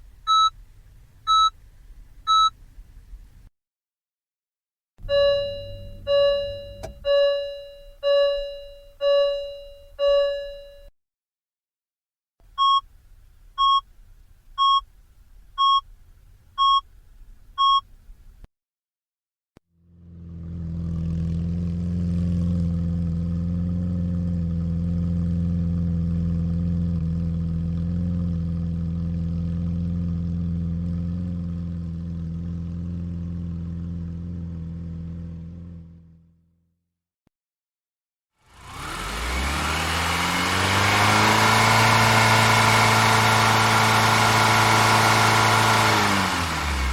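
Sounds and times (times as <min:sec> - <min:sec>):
car warning chimes: 0:00.3 - 0:00.6, 0:01.3 - 0:01.6, 0:02.3 - 0:02.6, 0:05.0 - 0:10.9, 0:12.6 - 0:12.9, 0:13.6 - 0:13.9, 0:14.6 - 0:14.9, 0:15.6 - 0:15.9, 0:16.6 - 0:16.9, 0:17.6 - 0:17.9
car engine starting and idling: 0:05.0 - 0:10.7, 0:12.4 - 0:18.5, 0:38.5 - 0:46.9
short high beeps: 0:05.0 - 0:10.9.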